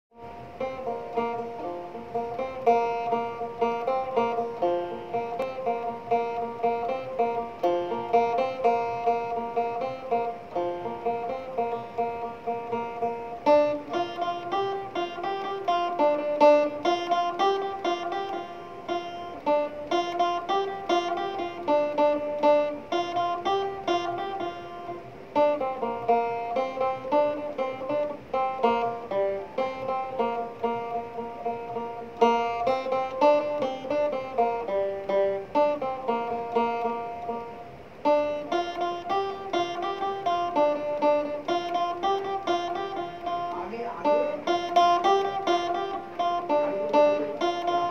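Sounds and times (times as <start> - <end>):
plucked string instrumental music: 0.1 - 47.9.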